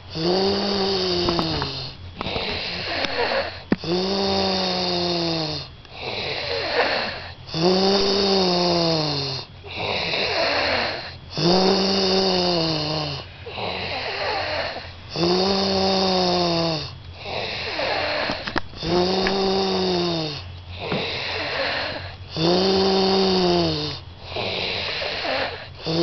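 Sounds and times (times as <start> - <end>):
rough breathing: 0.1 - 4.8, 5.9 - 8.2, 17.2 - 20.1, 20.7 - 23.6, 24.2 - 26.0
person snoring: 0.1 - 26.0.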